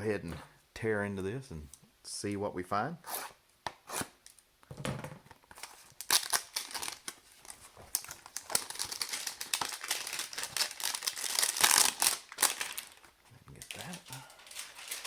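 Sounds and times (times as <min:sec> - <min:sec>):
cardboard packaging tearing: 0:05.6 - 0:07.2, 0:07.9 - 0:13.0, 0:13.7 - 0:15.0.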